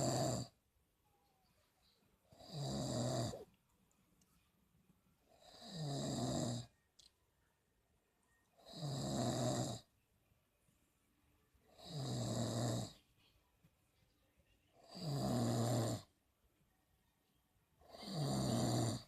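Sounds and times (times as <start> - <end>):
rattling snores: 0.0 - 0.6, 2.3 - 3.5, 5.4 - 6.7, 8.6 - 9.9, 11.8 - 13.0, 14.8 - 16.1, 17.9 - 19.0
quiet breathing: 0.0 - 7.6, 8.2 - 19.0.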